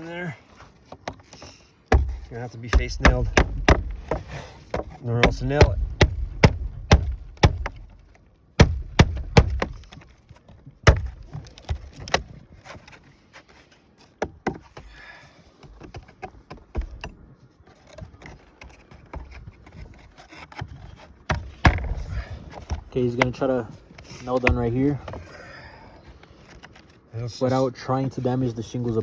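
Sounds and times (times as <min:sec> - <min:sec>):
hammer knocking on wood: 0:01.9 - 0:09.9, 0:10.9 - 0:11.4, 0:21.3 - 0:22.8, 0:24.5 - 0:24.8.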